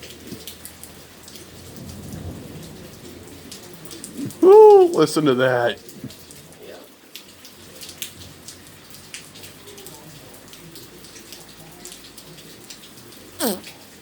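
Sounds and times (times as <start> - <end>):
hailstones ticking on surfaces: 0.0 - 4.2
hail and rain falling: 0.0 - 13.3.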